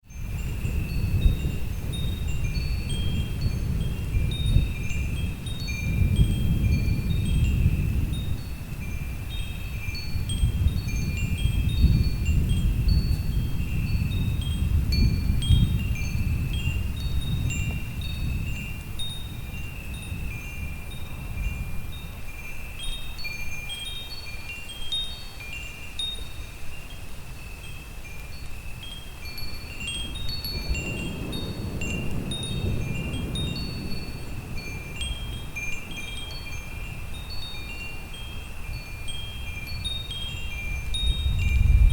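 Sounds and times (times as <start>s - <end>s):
wind chimes ringing: 0.1s - 41.9s
low rolling thunder: 30.5s - 35.6s, 41.1s - 41.9s.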